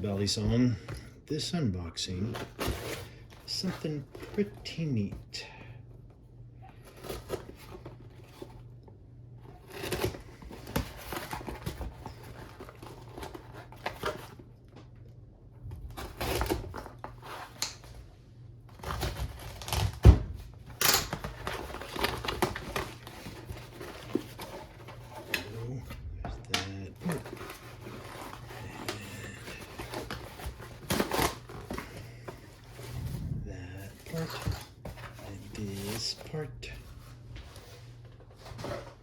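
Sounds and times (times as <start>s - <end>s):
wrapping crinkling and tearing: 9.4s - 14.4s, 21.1s - 37.0s
cardboard scraping: 21.3s - 39.0s.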